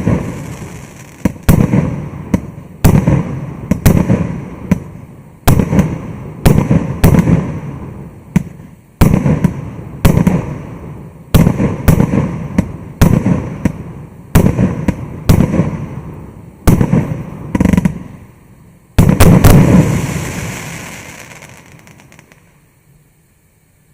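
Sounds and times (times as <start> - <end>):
firework bursts with rumbling echo: 0.0 - 18.2, 18.9 - 22.6.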